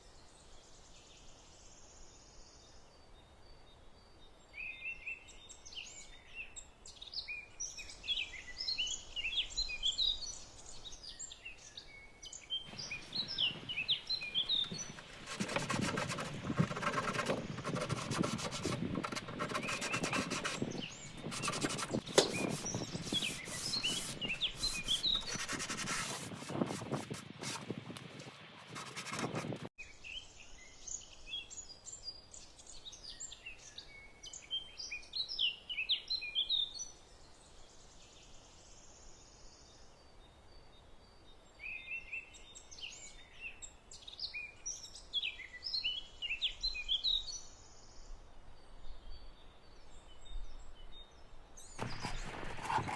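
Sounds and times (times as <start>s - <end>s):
birds singing: 12.6s - 27.1s
sandpaper rubbing on wood: 12.7s - 29.7s, 51.8s - 52.9s.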